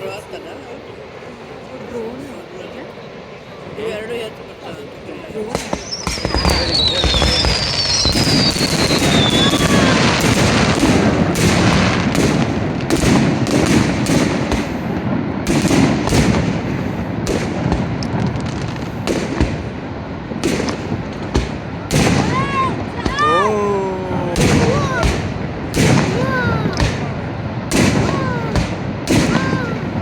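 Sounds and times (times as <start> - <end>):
continuous rumble: 0.0 - 30.0
fireworks bangs and crackles: 3.3 - 30.0
high falling whistle: 5.8 - 10.2.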